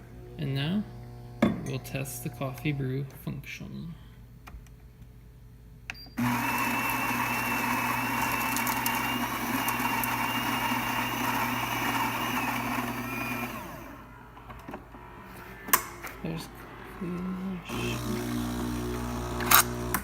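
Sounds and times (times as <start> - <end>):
coffee grinder motor whining: 6.2 - 14.1, 17.6 - 20.0.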